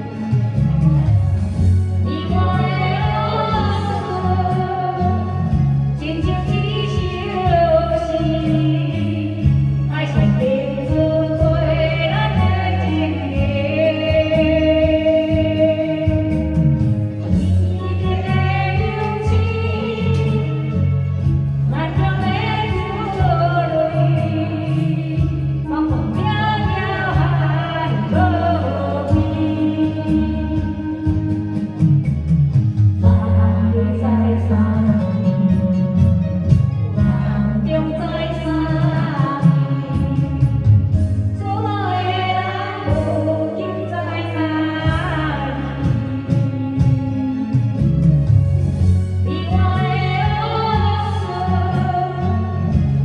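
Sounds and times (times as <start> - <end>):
backing music with strong bass: 0.0 - 53.0
person singing: 33.0 - 40.7.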